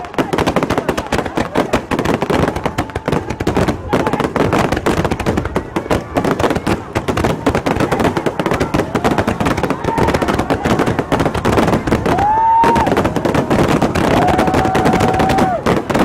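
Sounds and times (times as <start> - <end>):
fireworks crackling bangs: 0.0 - 16.0
rising firework whistle: 12.0 - 15.7.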